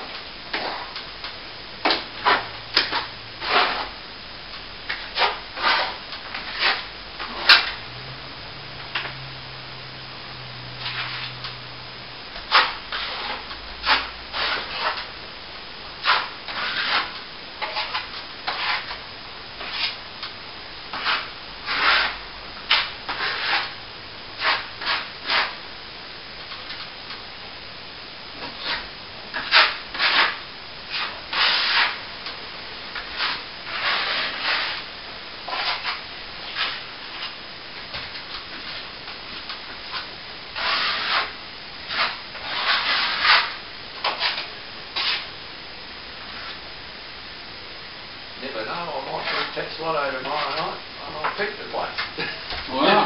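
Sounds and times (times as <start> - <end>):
hand sanding plaster: 2.2 - 3.9, 4.9 - 7.5, 12.5 - 15.1, 16.0 - 19.0, 19.6 - 20.0, 20.9 - 23.8, 24.4 - 25.6, 29.4 - 32.0, 33.0 - 34.9, 35.5 - 37.3, 40.6 - 41.3, 41.9 - 45.3.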